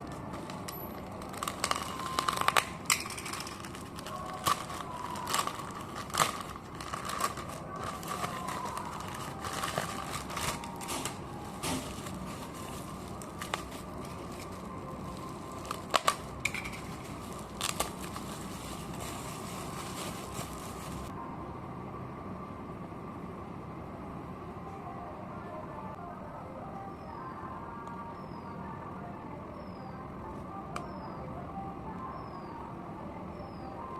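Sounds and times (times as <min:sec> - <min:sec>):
packaging crinkling and tearing: 0:00.0 - 0:21.1.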